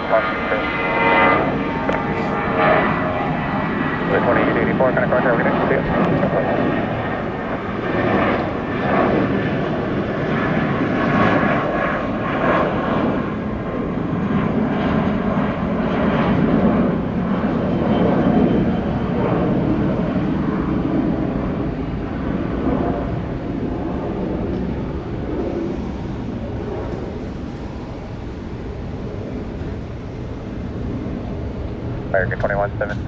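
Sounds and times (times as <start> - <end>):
jet engines at takeoff thrust: 0.0 - 33.0.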